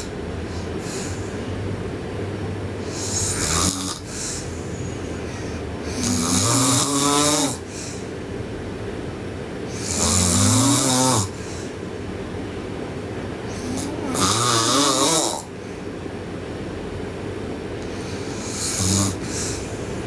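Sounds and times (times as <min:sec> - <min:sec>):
girl snoring: 0:00.0 - 0:01.5, 0:02.8 - 0:08.0, 0:09.7 - 0:11.6, 0:13.5 - 0:15.5, 0:17.9 - 0:20.0.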